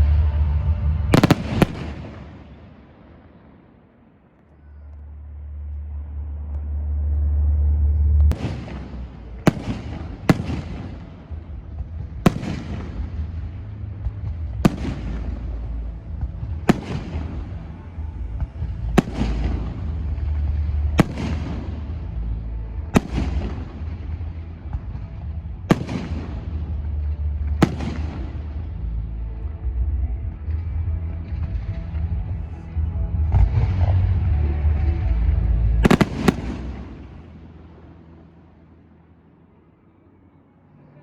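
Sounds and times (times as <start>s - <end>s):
steady low rumble: 0.0s - 40.2s
firework bangs echoing: 1.1s - 3.8s, 8.3s - 22.3s, 22.9s - 28.8s, 35.8s - 37.6s.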